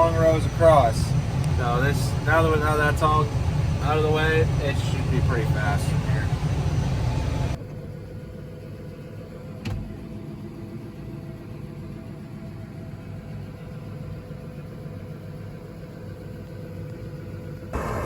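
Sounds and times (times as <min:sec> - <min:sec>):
farm machine engine humming: 0:00.0 - 0:07.6, 0:17.8 - 0:18.0.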